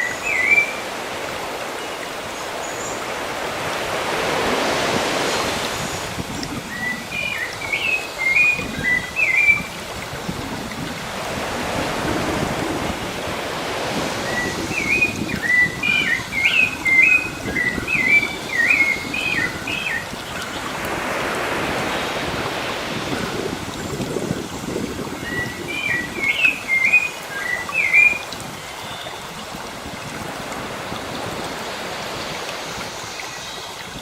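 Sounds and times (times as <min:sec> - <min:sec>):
sea waves washing: 0:00.0 - 0:34.0
songbird whistling: 0:14.3 - 0:20.1.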